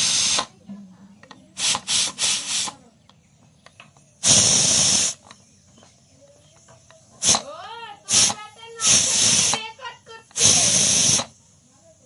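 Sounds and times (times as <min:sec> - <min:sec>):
pressure cooker hissing steam: 0:00.0 - 0:00.6, 0:01.6 - 0:02.8, 0:04.2 - 0:05.3, 0:07.0 - 0:12.0.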